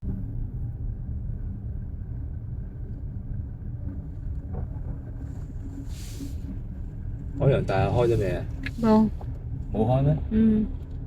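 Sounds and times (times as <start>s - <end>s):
car road and engine rumble: 0.0s - 11.0s
brief hiss: 5.8s - 6.5s.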